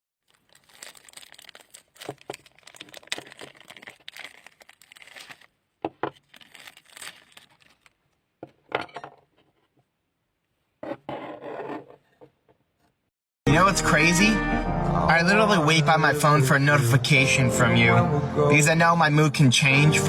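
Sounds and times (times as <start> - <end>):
slime crackling and popping: 0.2 - 5.6, 6.2 - 8.0.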